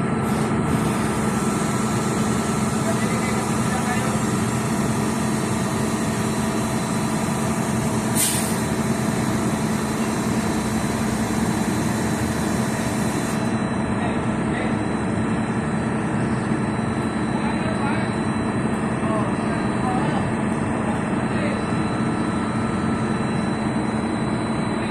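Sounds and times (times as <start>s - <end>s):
heavy diesel engine running: 0.0s - 24.9s
brief hiss: 8.2s - 8.6s.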